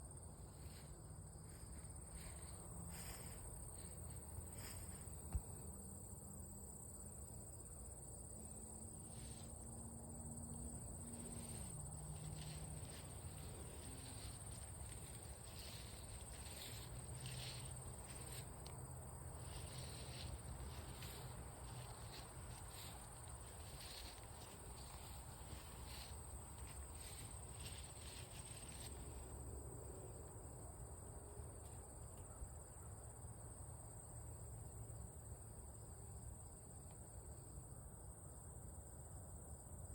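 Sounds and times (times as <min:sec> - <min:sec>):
crickets chirring: 0:00.0 - 0:39.9
low steady hum: 0:00.2 - 0:30.8
steps rustling through vegetation: 0:10.8 - 0:29.4.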